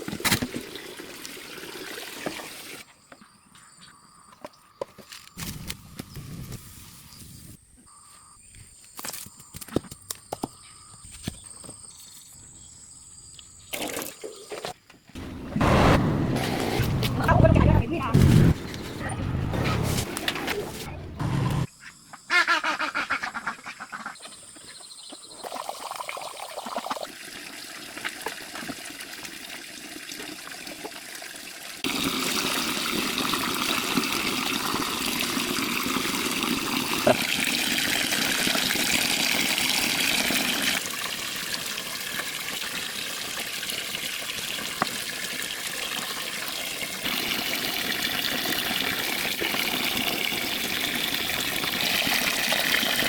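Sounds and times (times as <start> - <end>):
running splashing water: 25.4 - 53.0.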